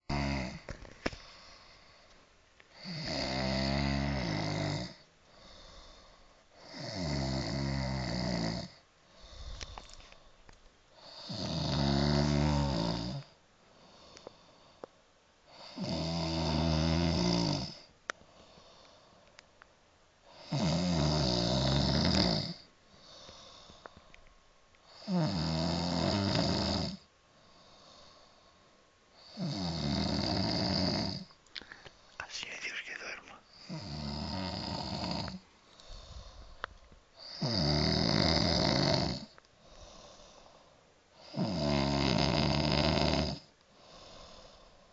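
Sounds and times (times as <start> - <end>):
man snoring: 0.0 - 0.7, 2.7 - 6.0, 6.6 - 9.7, 11.0 - 13.3, 15.5 - 17.9, 20.3 - 23.8, 24.9 - 28.0, 29.2 - 31.3, 32.4 - 36.4, 37.2 - 40.4, 41.2 - 44.6
faint breaths: 0.2 - 3.4, 4.0 - 6.9, 8.4 - 11.4, 13.2 - 15.8, 17.7 - 19.6, 22.6 - 25.2, 27.2 - 29.5, 31.2 - 37.5, 39.2 - 41.4, 43.4 - 44.9.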